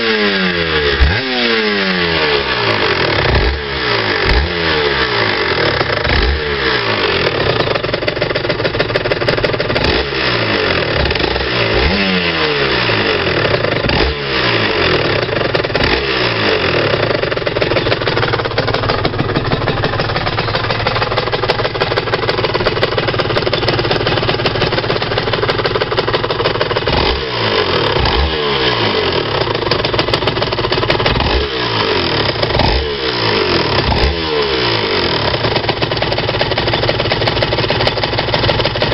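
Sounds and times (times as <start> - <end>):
two-stroke engine revving: 0.0 - 38.9
clinking engine rattle: 5.2 - 11.9, 14.9 - 16.0, 16.6 - 28.3, 29.1 - 31.4, 35.2 - 38.9.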